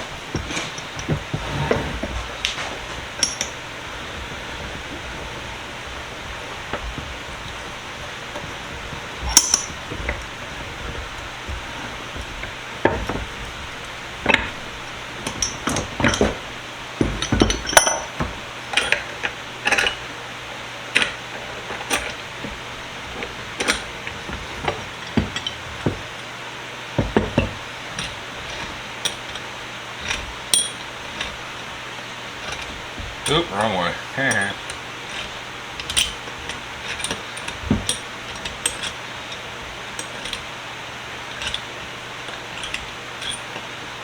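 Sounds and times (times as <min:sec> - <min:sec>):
steady background hiss: 0:00.0 - 0:44.0
metal parts clanking: 0:00.3 - 0:20.0, 0:23.2 - 0:26.2, 0:30.0 - 0:31.4, 0:41.2 - 0:43.7.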